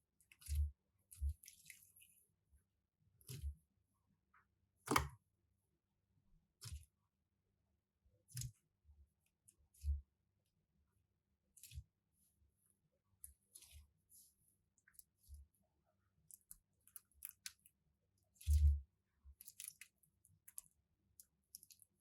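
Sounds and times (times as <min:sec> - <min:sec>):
slime squelching: 0:16.2 - 0:22.0.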